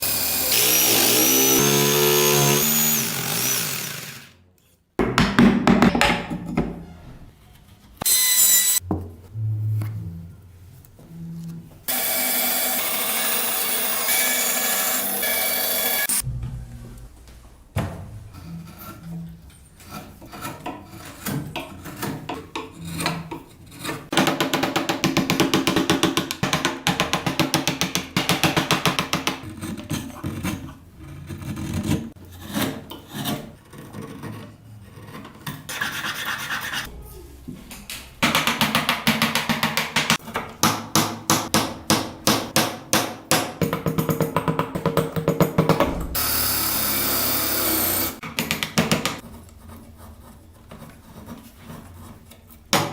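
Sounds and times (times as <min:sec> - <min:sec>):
filing or sanding wood: 0:35.7 - 0:36.9.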